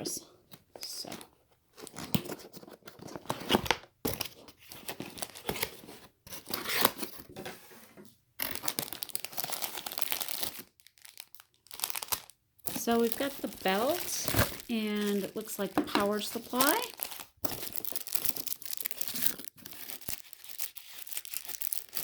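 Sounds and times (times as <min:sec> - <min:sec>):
packaging crinkling and tearing: 0:01.8 - 0:07.2, 0:08.4 - 0:22.0.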